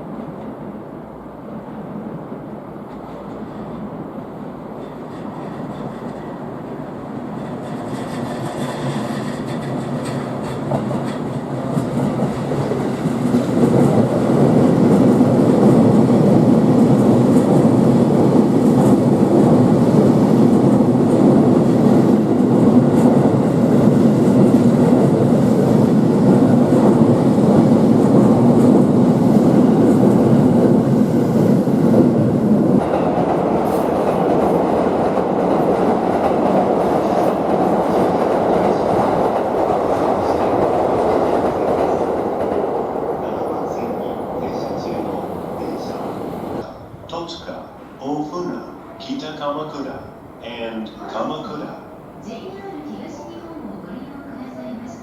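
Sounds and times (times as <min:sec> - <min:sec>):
train wheels clattering: 0:07.2 - 0:46.2.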